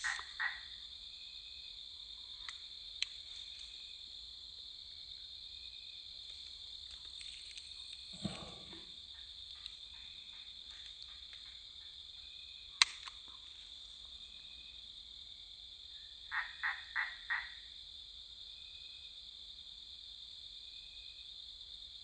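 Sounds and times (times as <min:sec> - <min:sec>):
frog croaking: 0:00.0 - 0:00.9, 0:16.2 - 0:17.7
insects droning: 0:00.0 - 0:22.0
sharp click: 0:12.8 - 0:13.2.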